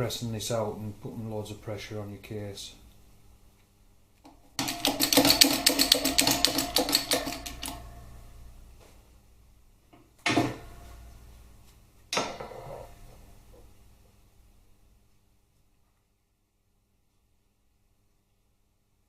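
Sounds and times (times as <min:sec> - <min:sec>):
rapid metallic rattle: 0:04.6 - 0:07.9.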